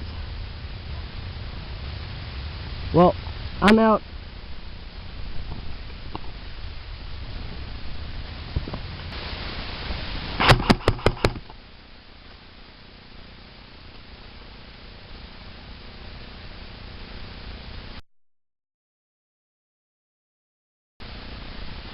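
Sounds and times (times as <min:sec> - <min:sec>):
steady rustling hiss: 0:00.0 - 0:18.0, 0:21.0 - 0:21.9
sharp knocks: 0:10.4 - 0:11.5.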